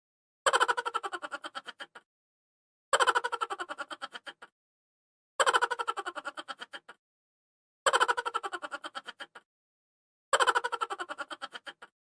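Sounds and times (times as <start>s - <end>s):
high-pitched cartoon laugh: 0.5s - 2.0s, 3.0s - 4.5s, 5.4s - 7.0s, 7.9s - 9.4s, 10.3s - 12.0s.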